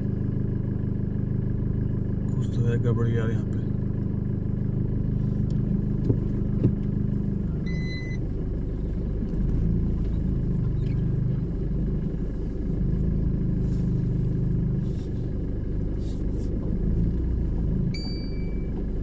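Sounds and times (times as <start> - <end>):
car engine idling: 0.0 - 19.0
short beep: 7.5 - 8.2, 17.9 - 18.7.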